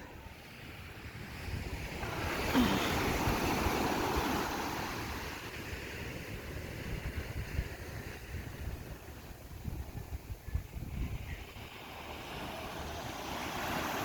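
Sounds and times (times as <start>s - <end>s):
wind on microphone: 0.0s - 14.0s
ocean wave breaking: 1.8s - 6.2s, 11.4s - 14.0s.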